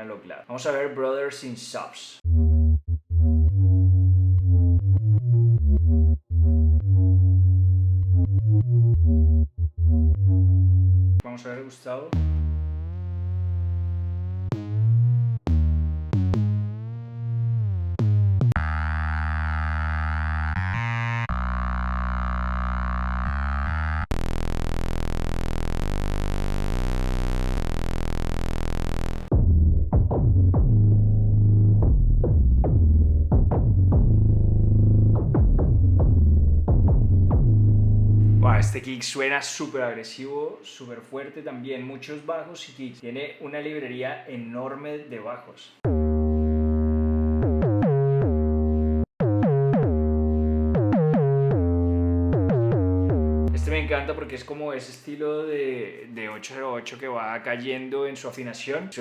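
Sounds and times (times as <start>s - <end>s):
synthesizer sub-bass bassline: 2.2s - 11.3s, 12.1s - 38.8s, 45.8s - 54.4s
buzzy sustained synth: 18.6s - 29.3s
punchy kick-bass hits: 29.3s - 38.8s.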